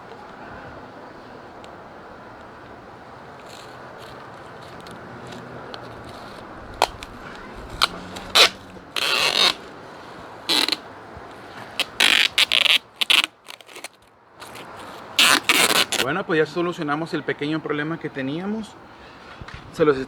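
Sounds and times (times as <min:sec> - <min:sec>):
tape roll clicks: 0:02.4 - 0:09.8, 0:10.4 - 0:16.1
tape ripping off roll: 0:03.3 - 0:16.1.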